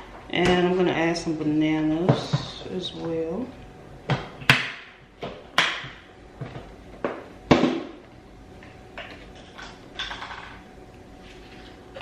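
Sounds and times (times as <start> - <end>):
items knocking on a counter: 4.1 - 8.0.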